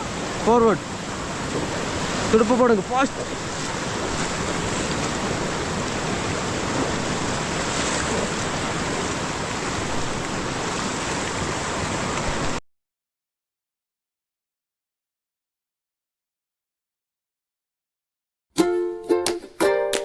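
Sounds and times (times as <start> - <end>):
river rapids rushing: 0.0 - 12.6.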